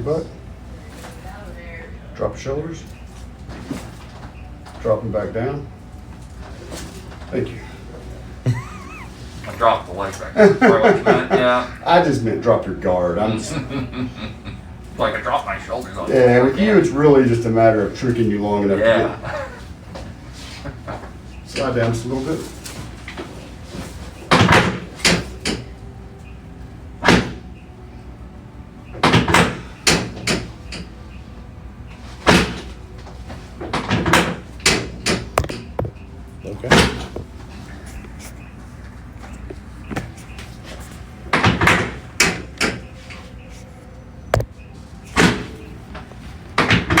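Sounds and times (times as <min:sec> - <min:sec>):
adjusting table knocking: 0:35.1 - 0:36.0.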